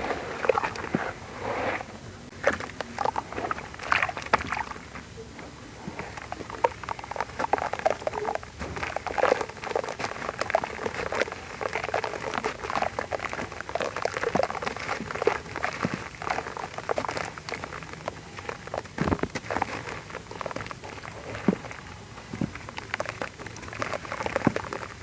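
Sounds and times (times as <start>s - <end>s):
wet sand crackling and fizzing: 5.7s - 25.0s.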